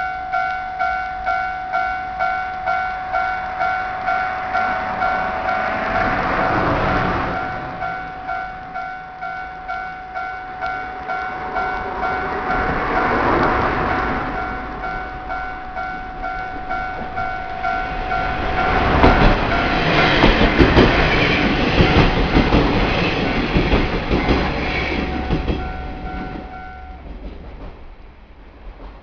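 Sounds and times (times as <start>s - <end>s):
level crossing bell ringing: 0.0s - 22.5s, 24.6s - 27.1s
train wheels clattering: 10.7s - 28.0s.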